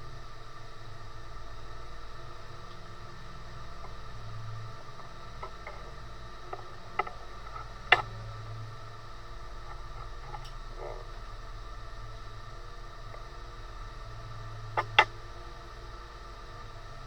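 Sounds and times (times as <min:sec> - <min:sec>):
machine humming: 0:00.0 - 0:17.0
sharp clicks and knocks: 0:05.4 - 0:08.3, 0:14.8 - 0:15.2.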